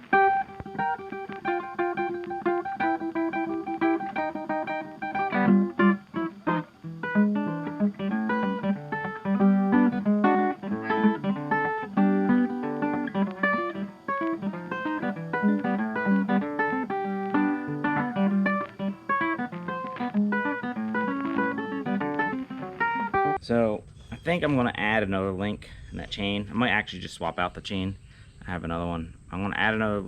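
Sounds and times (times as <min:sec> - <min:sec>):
plucked guitar music: 0:00.0 - 0:23.4.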